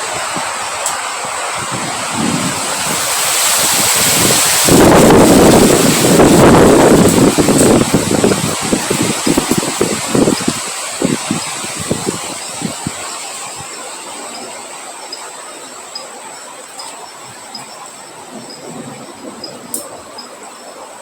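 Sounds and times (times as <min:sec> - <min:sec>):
low gusting thumps: 0:00.0 - 0:13.7
high insect drone: 0:00.0 - 0:21.0
rain and wind hiss: 0:00.0 - 0:21.0.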